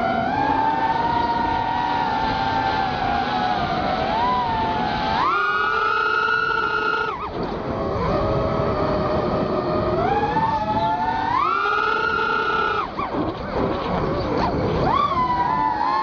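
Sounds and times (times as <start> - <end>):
quadcopter motors whining: 0.0 - 16.0.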